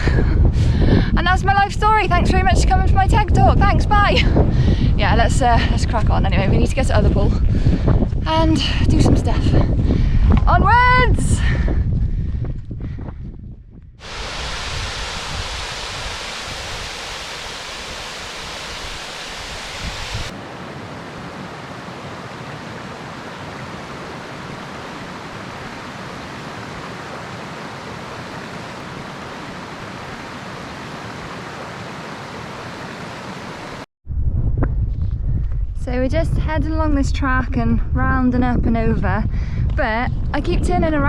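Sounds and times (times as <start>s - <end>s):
rushing open-air noise: 14.0s - 36.6s.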